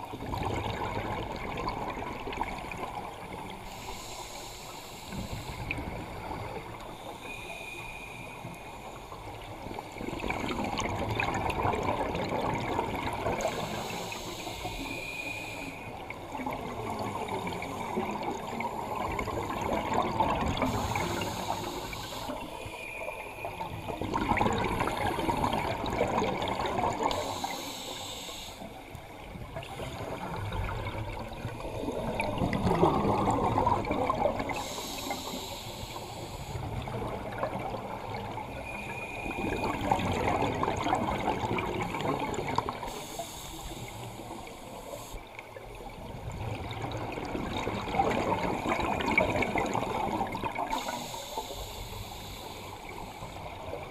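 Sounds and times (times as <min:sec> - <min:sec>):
gurgling exhaled bubbles: 0:00.0 - 0:03.7, 0:09.2 - 0:14.2, 0:15.9 - 0:27.6, 0:28.9 - 0:35.4, 0:36.5 - 0:43.0, 0:45.4 - 0:51.2
diver breathing through regulator: 0:03.6 - 0:06.2, 0:13.3 - 0:16.0, 0:20.5 - 0:22.6, 0:27.0 - 0:28.9, 0:34.4 - 0:36.9, 0:42.7 - 0:45.2, 0:50.7 - 0:53.6.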